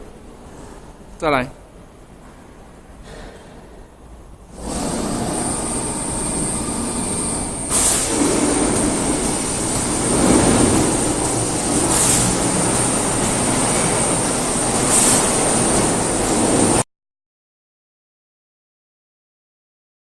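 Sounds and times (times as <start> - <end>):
hissing surges: 4.5 - 16.8
polishing machine whining: 4.6 - 16.7.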